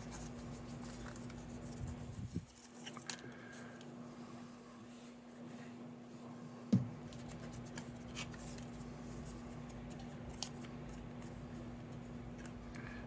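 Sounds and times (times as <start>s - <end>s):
paper rustling and ticking: 7.1s - 13.0s.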